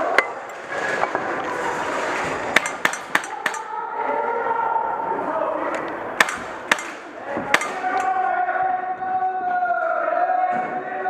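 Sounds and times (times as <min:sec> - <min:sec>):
airsoft gun shots: 0:06.2 - 0:08.0.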